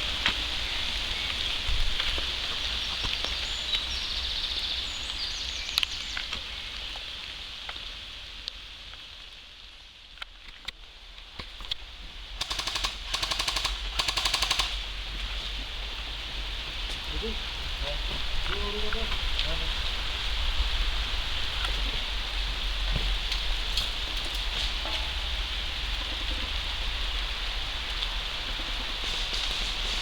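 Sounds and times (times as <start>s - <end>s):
steady high hiss: 0.0s - 30.0s
airsoft gun full-auto bursts: 12.4s - 14.8s.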